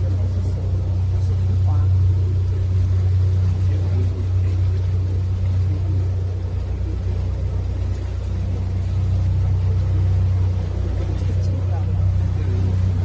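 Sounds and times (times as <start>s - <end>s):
boat engine droning: 0.0s - 13.0s.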